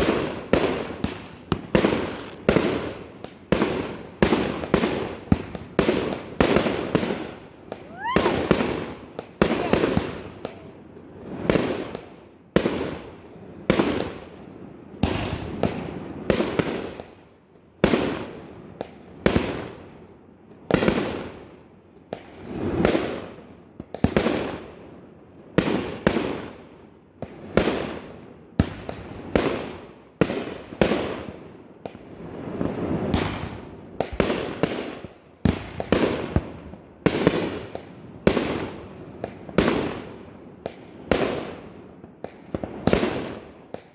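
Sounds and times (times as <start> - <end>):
fireworks banging: 0.0 - 12.0, 15.0 - 17.0, 32.4 - 36.4
fireworks crackling: 0.0 - 17.2, 31.9 - 43.9.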